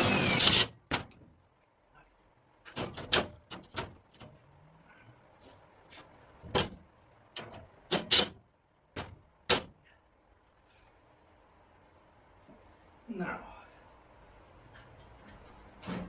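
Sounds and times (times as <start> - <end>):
knocks and clunks of metal bodywork: 0.8 - 1.5, 2.6 - 4.6, 5.4 - 9.9, 14.8 - 16.0.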